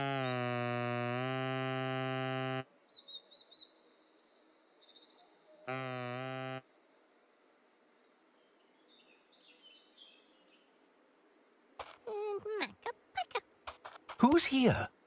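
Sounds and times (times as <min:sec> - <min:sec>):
faint bird chirps: 0:00.0 - 0:00.6, 0:02.6 - 0:06.7, 0:07.8 - 0:10.8
buzzy horn-like tone: 0:00.0 - 0:02.7, 0:05.6 - 0:06.7.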